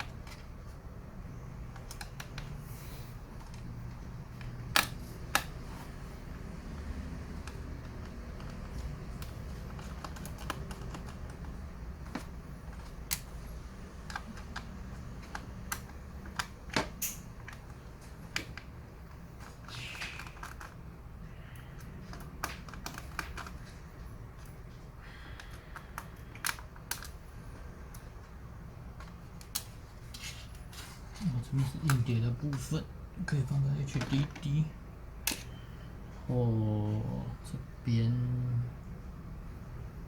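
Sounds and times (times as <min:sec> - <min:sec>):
laptop parts clicking: 0:00.0 - 0:31.0, 0:35.2 - 0:35.6
scraping rustles: 0:29.9 - 0:32.0.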